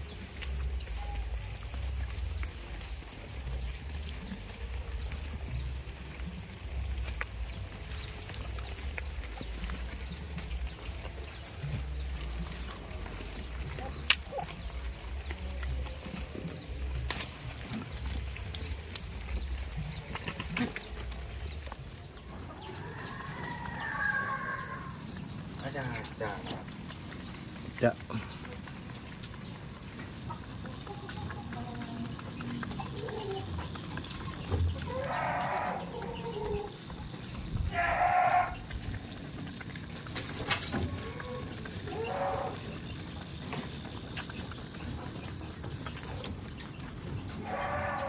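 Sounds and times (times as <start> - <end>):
farm animal call: 0.0 - 48.0
goats bleating: 22.7 - 25.1, 34.7 - 36.8, 37.5 - 38.8, 40.7 - 42.9, 47.4 - 48.0.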